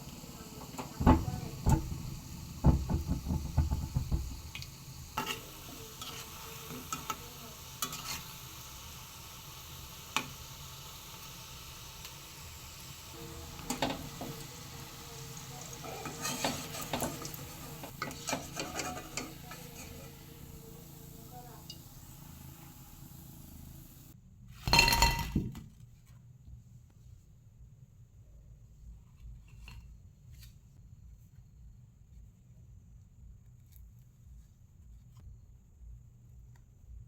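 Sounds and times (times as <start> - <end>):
food sizzling in hot oil: 0.0 - 24.2
utensil scraping a pan: 0.7 - 8.6, 13.2 - 24.0
knocks: 1.0 - 4.7.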